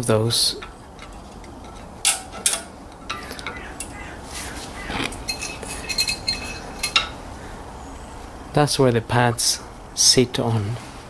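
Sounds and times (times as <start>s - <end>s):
metallic ringing: 5.2s - 7.2s
small metal clicks and clinks: 5.2s - 7.2s.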